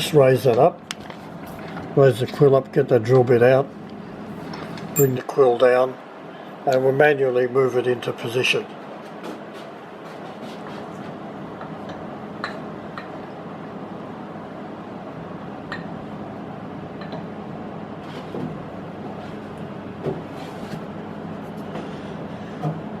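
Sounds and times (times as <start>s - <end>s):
steady background hum: 0.0s - 23.0s.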